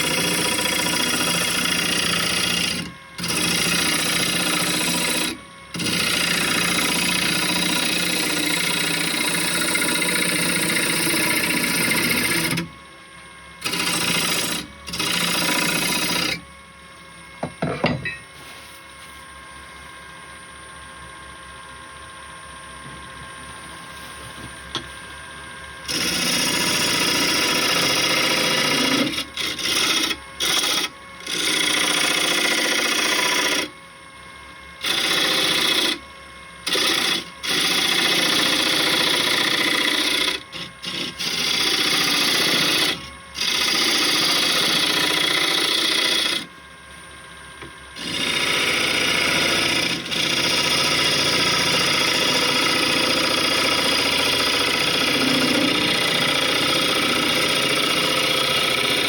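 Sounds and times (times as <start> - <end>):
tool rasping on spinning wood: 0.0 - 12.7, 13.6 - 16.4, 25.8 - 33.8, 34.8 - 36.0, 36.6 - 46.5, 48.0 - 59.0.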